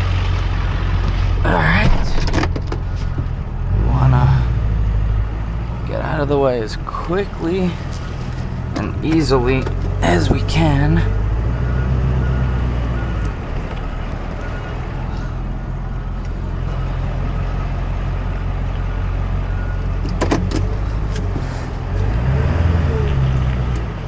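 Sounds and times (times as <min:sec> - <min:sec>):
truck engine running: 0:00.0 - 0:24.0.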